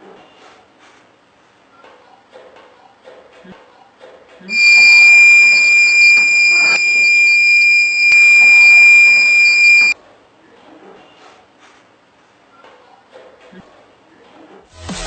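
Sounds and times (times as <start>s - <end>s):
high-pitched alarm buzzer: 4.5s - 10.0s.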